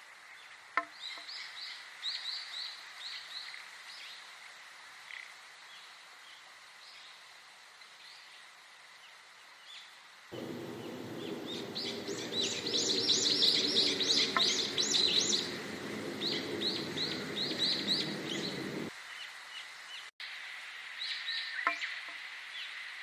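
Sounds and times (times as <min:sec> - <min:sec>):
songbird chirping: 0:09.8 - 0:20.1, 0:21.0 - 0:22.9
low rushing noise: 0:10.3 - 0:18.9.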